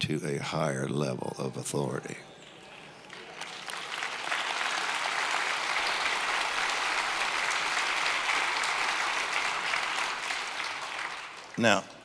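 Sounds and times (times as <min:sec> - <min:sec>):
congregation applauding: 0:02.4 - 0:12.0.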